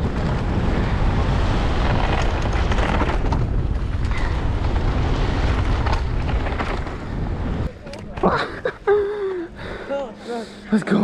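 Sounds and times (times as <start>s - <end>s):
wind buffeting microphone: 0.0s - 9.9s
bike clicks and knocks: 1.8s - 7.2s.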